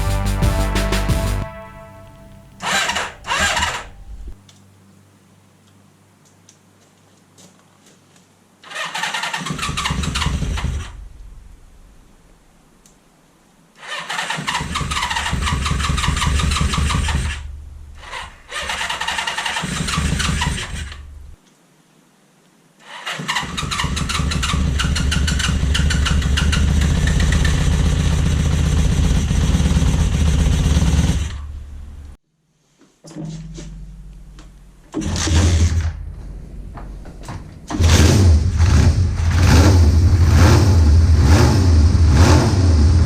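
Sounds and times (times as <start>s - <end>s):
motorcycle engine starting: 0.0s - 4.4s, 14.1s - 17.4s, 23.3s - 32.0s, 33.6s - 43.0s.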